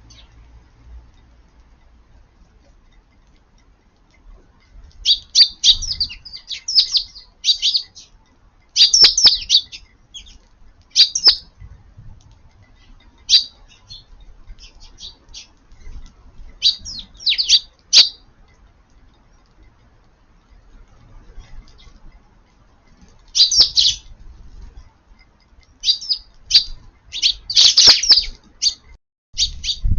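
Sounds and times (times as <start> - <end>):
sparrows chirping: 0.0 - 0.5, 4.9 - 11.7, 12.6 - 18.3, 20.9 - 22.1, 22.9 - 24.8, 25.6 - 29.9.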